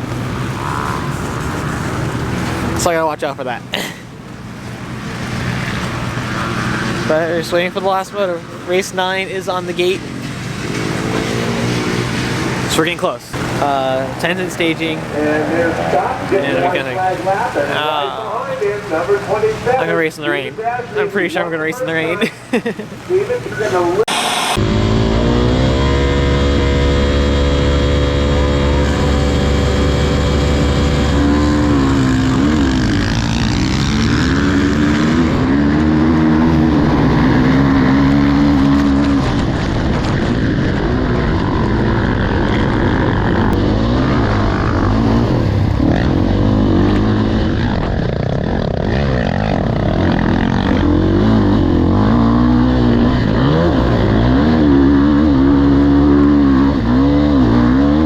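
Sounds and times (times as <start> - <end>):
motorcycle engine revving: 0.0 - 2.9, 9.3 - 17.1, 24.1 - 58.0.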